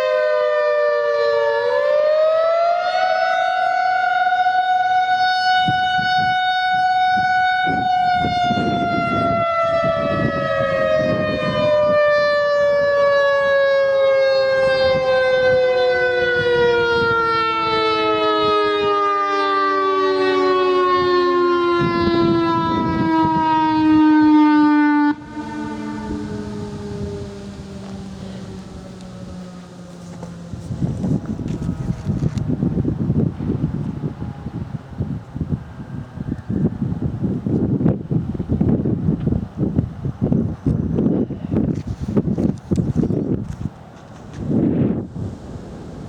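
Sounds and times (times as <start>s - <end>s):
warning siren winding down: 0.0s - 38.8s.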